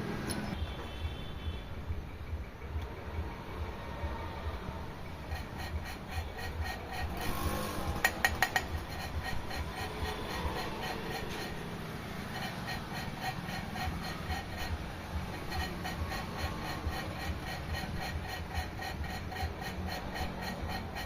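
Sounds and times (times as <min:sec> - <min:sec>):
machine running with rhythmic pulse: 0:00.0 - 0:21.0.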